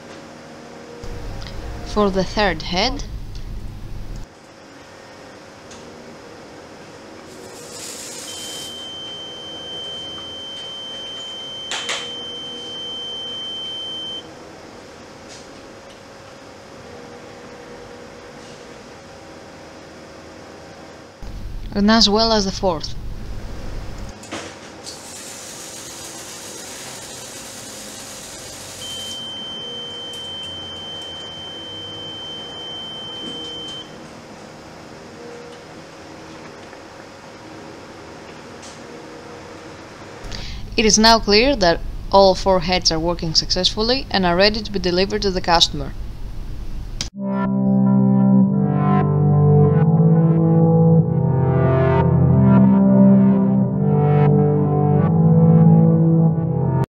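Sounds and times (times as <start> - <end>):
spray hissing: 7.5 - 8.7
high alarm beep: 8.3 - 14.3, 28.7 - 33.9.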